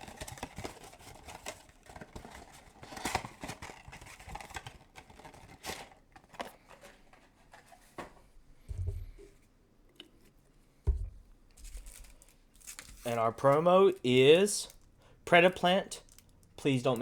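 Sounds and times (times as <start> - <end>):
packaging rustling and crinkling: 0.0 - 9.1, 10.9 - 14.9.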